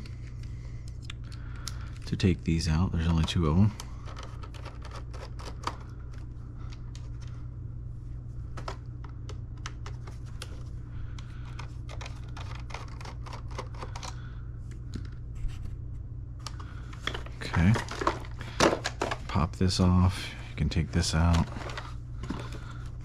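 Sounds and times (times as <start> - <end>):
steady low hum: 0.0 - 23.0
plastic parts being handled: 3.1 - 7.3, 8.5 - 14.2, 16.4 - 19.8, 20.7 - 23.0.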